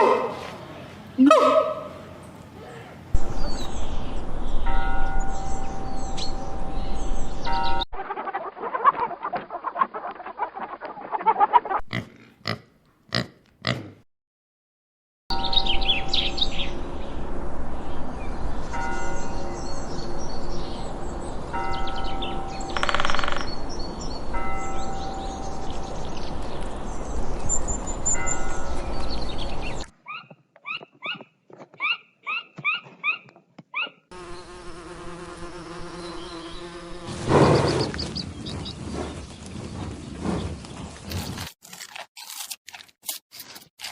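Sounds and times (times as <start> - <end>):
small birds chirping: 35.5 - 41.4.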